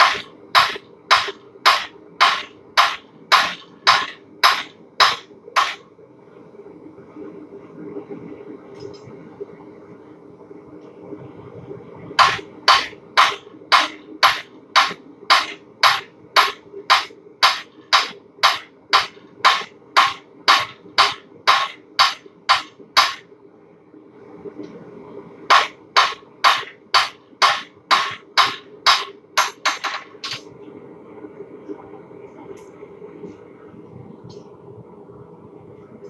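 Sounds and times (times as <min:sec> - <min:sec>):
hammer ringing on anvil: 0:00.0 - 0:05.8, 0:12.2 - 0:23.2, 0:25.5 - 0:30.4
steady low hum: 0:00.0 - 0:36.0.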